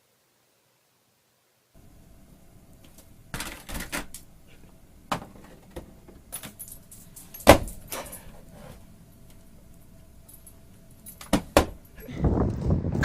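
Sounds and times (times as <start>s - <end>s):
sharp knocks and rattling clatters: 2.9s - 4.3s, 5.1s - 8.8s.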